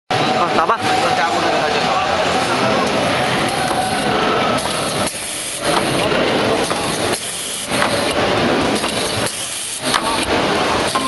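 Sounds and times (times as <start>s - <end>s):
screw-tightening machine running: 2.6s - 11.0s.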